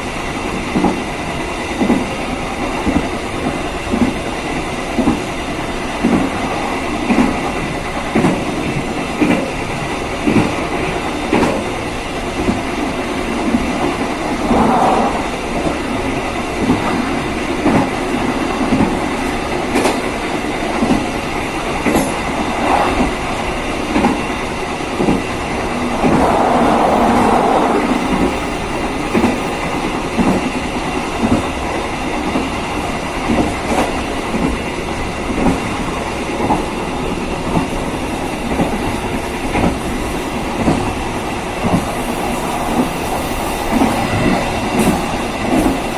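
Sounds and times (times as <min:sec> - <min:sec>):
train running rumble: 0:00.0 - 0:45.9
train wheels clicking over rail joints: 0:04.9 - 0:45.9
rush of noise: 0:14.0 - 0:16.5, 0:25.2 - 0:29.3.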